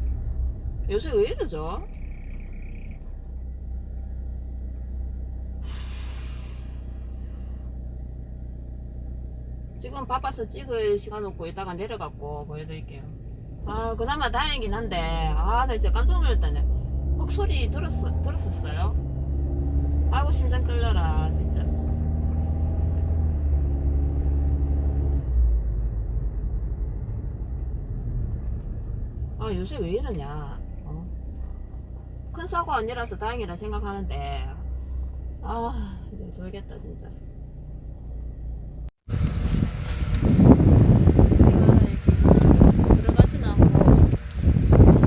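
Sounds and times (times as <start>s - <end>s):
car interior rumble: 0.0s - 45.0s
hiss: 5.7s - 7.4s.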